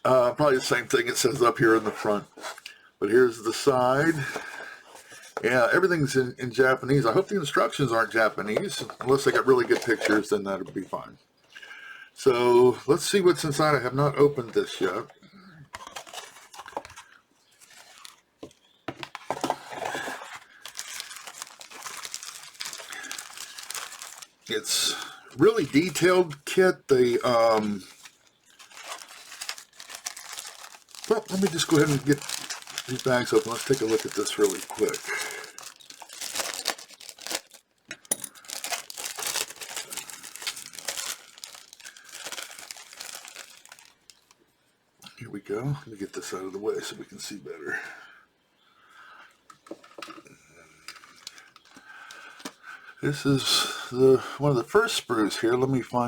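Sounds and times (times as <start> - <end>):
plastic wrapping tearing and crinkling: 15.8 - 17.0, 17.6 - 18.2, 19.2 - 44.4.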